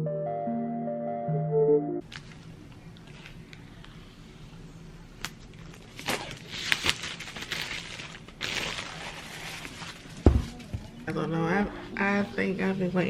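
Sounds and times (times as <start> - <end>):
packaging rustling and scraping: 5.6 - 10.7.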